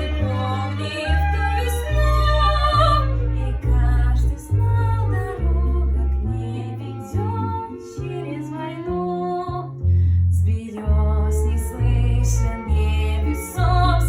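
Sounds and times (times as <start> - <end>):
girl singing: 0.0 - 9.7
instrumental accompaniment: 0.0 - 10.1, 10.7 - 14.0
deep bass notes: 0.0 - 14.0.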